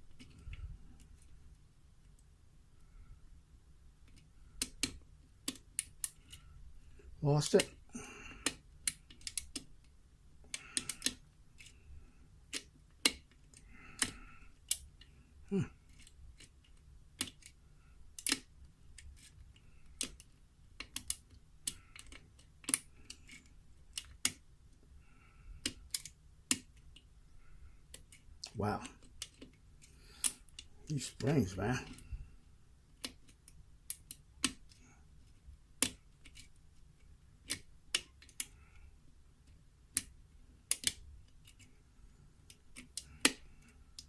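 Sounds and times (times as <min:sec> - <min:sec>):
lock pick clicking and scraping: 0:08.4 - 0:09.7, 0:10.5 - 0:11.8, 0:12.5 - 0:15.0, 0:15.9 - 0:24.4, 0:25.5 - 0:27.0, 0:27.9 - 0:30.7, 0:33.0 - 0:36.6, 0:37.4 - 0:38.6, 0:39.4 - 0:41.8, 0:42.5 - 0:44.0.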